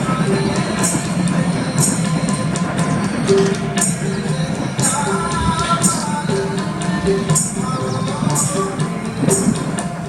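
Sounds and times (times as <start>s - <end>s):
music with held notes and beat: 0.0s - 10.0s.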